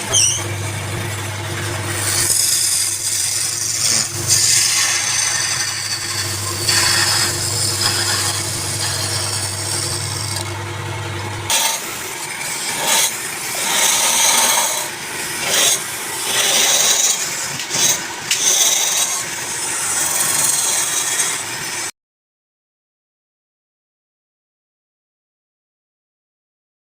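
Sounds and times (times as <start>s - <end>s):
wood being rubbed and scraped: 0.0s - 10.5s, 11.5s - 21.9s
low motor hum: 0.0s - 14.0s.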